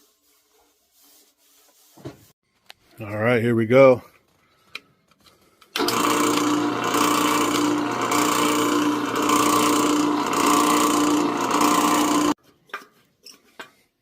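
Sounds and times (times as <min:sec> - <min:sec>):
electric power tool running: 0:05.8 - 0:12.4.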